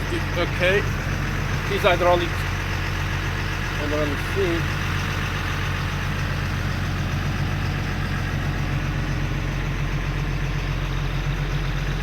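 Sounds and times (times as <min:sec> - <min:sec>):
diesel truck engine idling: 0:00.0 - 0:12.0.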